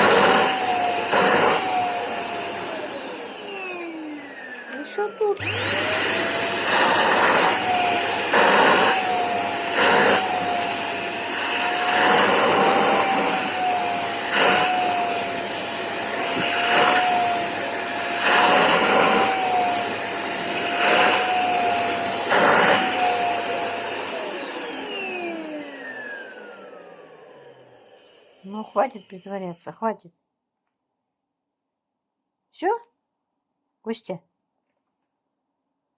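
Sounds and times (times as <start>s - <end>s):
vacuum suction rushes: 0.0s - 28.5s
vacuum cleaner motor whine: 0.0s - 29.6s.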